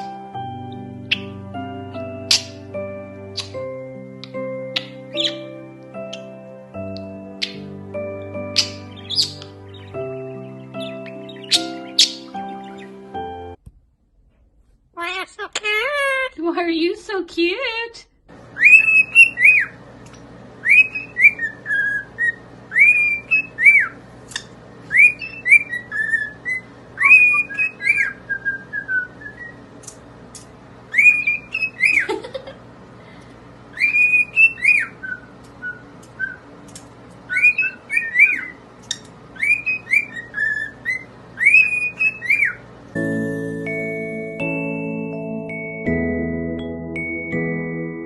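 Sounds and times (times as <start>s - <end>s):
parrot whistling: 2.2s - 3.7s, 4.3s - 5.5s, 7.3s - 13.0s, 18.6s - 19.8s, 20.6s - 29.6s, 30.9s - 32.1s, 33.7s - 36.5s, 37.3s - 42.6s.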